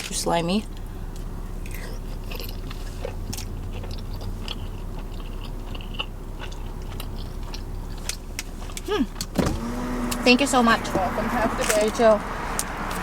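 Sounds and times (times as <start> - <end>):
steady low hum: 0.0 - 13.0
person chewing soft food: 1.1 - 9.3.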